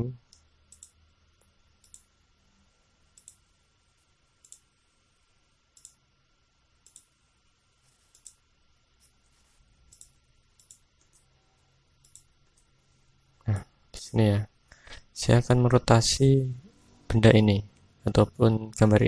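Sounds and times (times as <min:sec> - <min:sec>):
faint room hiss: 0:00.0 - 0:19.0
computer mouse clicking: 0:00.3 - 0:02.1, 0:03.1 - 0:03.5, 0:04.4 - 0:04.7, 0:05.8 - 0:06.0, 0:06.8 - 0:07.1, 0:07.9 - 0:08.4, 0:09.9 - 0:11.3, 0:12.0 - 0:12.7.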